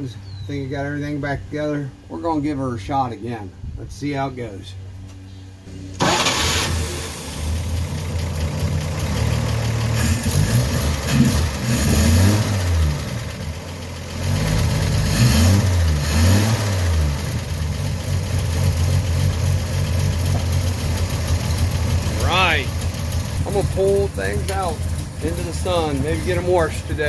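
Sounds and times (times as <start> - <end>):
truck engine starting and revving: 5.8 - 27.0.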